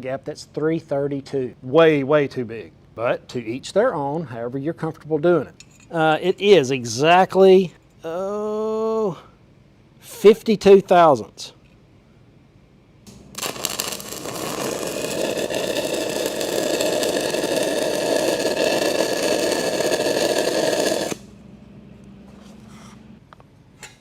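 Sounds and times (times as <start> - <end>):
low steady hum: 0.0 - 24.0
welding arc crackling: 13.1 - 21.3.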